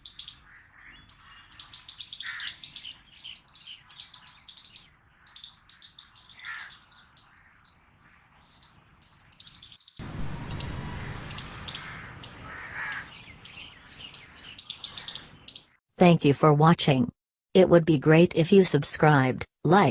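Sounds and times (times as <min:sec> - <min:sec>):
squirrel barking: 0:00.0 - 0:09.7, 0:11.4 - 0:15.6.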